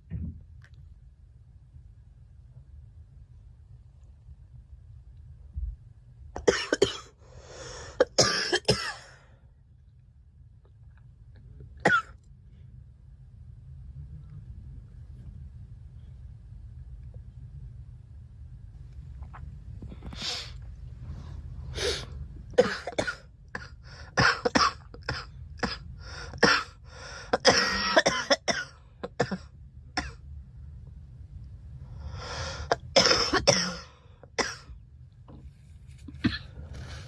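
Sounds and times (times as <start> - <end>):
girl coughing: 6.4 - 7.1, 8.0 - 9.1, 11.8 - 12.1, 22.6 - 25.8, 26.4 - 26.7, 27.4 - 29.4, 32.7 - 34.7, 36.2 - 36.5.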